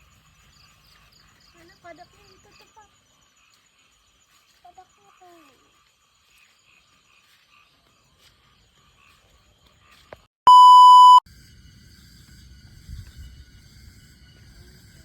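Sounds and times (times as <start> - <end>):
electronic beep: 10.5 - 11.2.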